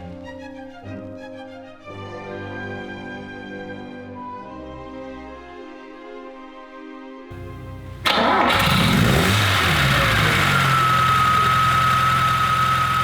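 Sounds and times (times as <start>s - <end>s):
engine starting and idling: 7.3s - 13.0s.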